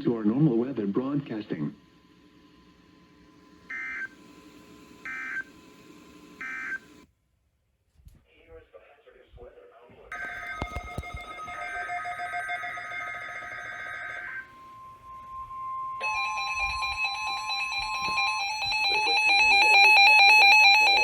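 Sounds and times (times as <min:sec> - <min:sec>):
steady warning alarm tone: 0:02.6 - 0:07.0, 0:10.1 - 0:21.0
alternating electronic alarm: 0:03.5 - 0:07.0, 0:10.1 - 0:21.0.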